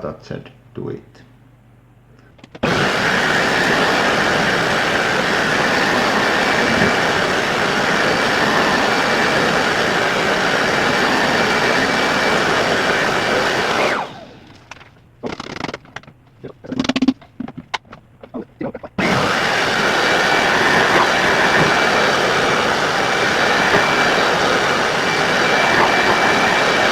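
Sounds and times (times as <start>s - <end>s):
vacuum cleaner running: 2.6s - 14.7s, 19.0s - 26.9s
vacuum motor winding down: 2.6s - 14.8s, 19.0s - 26.9s.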